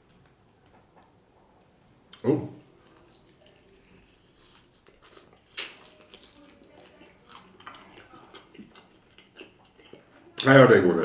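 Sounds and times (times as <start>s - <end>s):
wet mouth smacks chewing: 2.1s - 10.0s.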